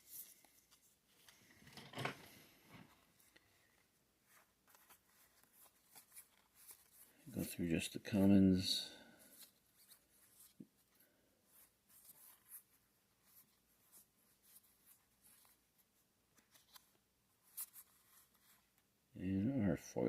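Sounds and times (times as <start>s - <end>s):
trading cards rustling and flicking: 2.3s - 8.4s.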